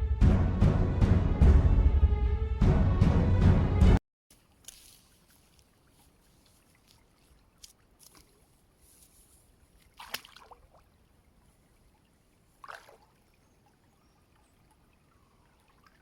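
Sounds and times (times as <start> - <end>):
water splashing: 4.3 - 16.0.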